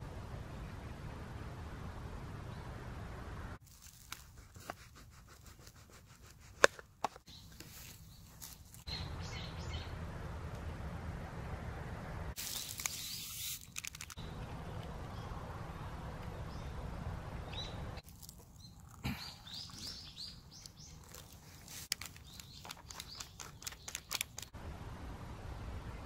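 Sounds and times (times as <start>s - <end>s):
birds chirping: 7.2s - 10.0s, 12.4s - 24.5s.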